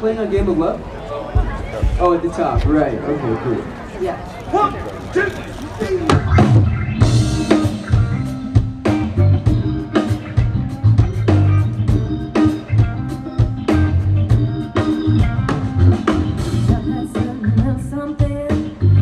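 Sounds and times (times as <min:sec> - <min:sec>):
blues rock band playing: 0:03.8 - 0:19.0.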